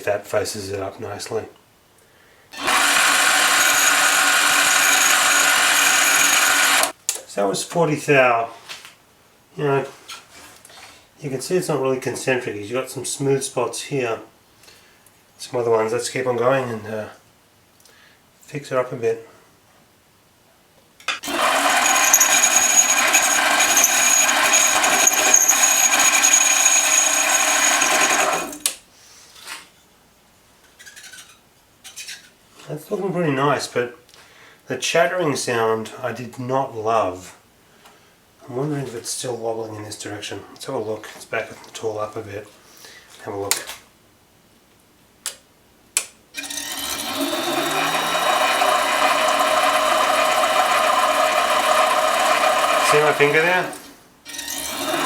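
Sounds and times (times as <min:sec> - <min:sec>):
lathe tool chattering: 0:02.6 - 0:06.9, 0:21.2 - 0:28.6, 0:46.4 - 0:55.0
lathe whine: 0:02.6 - 0:06.9, 0:21.2 - 0:28.6, 0:46.4 - 0:55.0
person speaking: 0:52.8 - 0:53.8.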